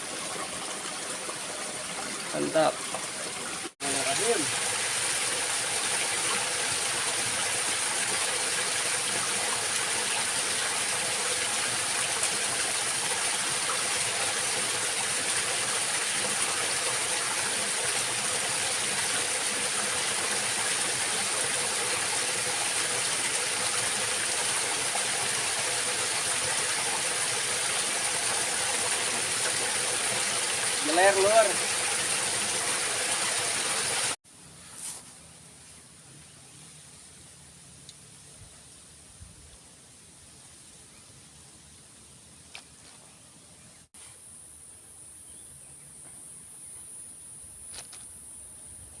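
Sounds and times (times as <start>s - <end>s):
stream water flowing: 0.0s - 34.2s.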